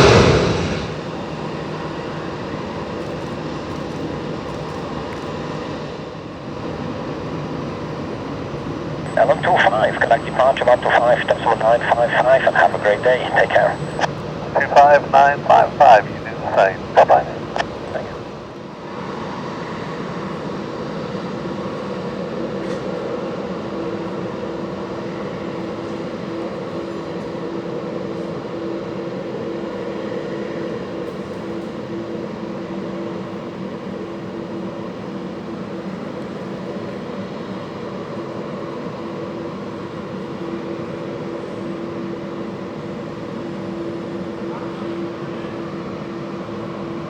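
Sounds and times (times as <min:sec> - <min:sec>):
jet engine rumble: 0:00.0 - 0:01.6, 0:09.1 - 0:18.4.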